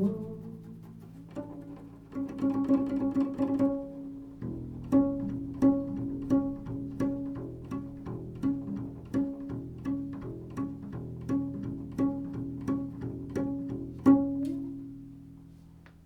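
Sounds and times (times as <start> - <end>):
plucked string notes: 0.0 - 16.0.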